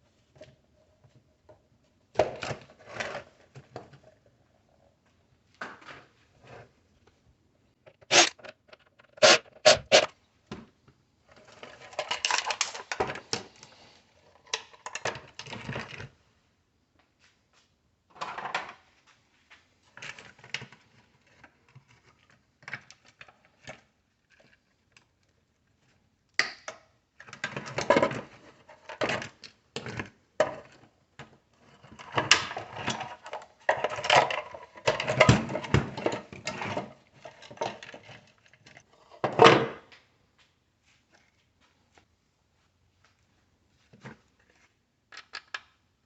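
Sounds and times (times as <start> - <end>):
tools and parts clattering: 11.4 - 13.4, 31.8 - 39.8.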